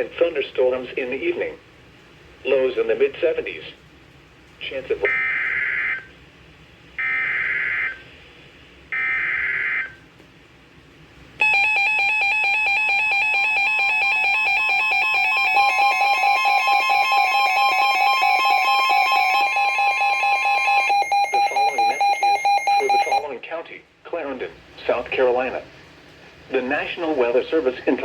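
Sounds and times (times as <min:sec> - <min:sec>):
pulsing electronic warning alarm: 0:05.1 - 0:06.1, 0:07.0 - 0:08.0, 0:08.9 - 0:10.0, 0:11.4 - 0:23.3.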